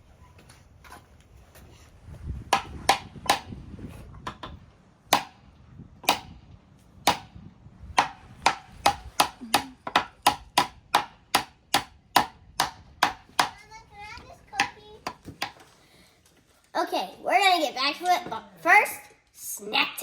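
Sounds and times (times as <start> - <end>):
hammer striking nail into wood: 2.5 - 3.6, 4.2 - 5.4, 6.0 - 6.4, 7.0 - 7.4, 8.0 - 13.6.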